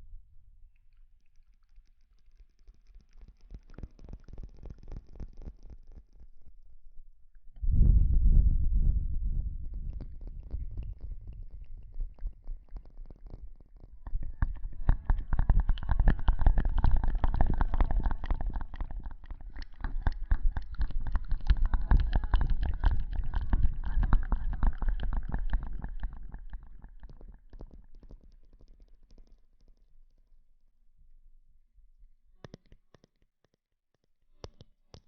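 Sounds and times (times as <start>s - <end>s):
low rumble: 7.5s - 12.7s, 13.5s - 27.0s.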